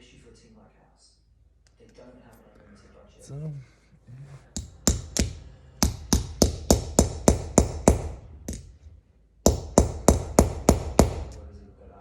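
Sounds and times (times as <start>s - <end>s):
hammer striking steel post: 4.6s - 8.8s, 9.5s - 11.5s.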